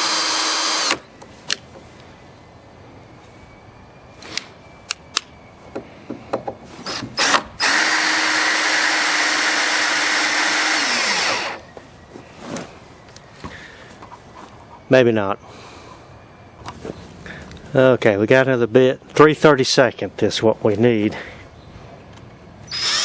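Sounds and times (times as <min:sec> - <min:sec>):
power drill drilling into screw: 0:00.0 - 0:01.0, 0:06.9 - 0:11.6, 0:22.7 - 0:23.0.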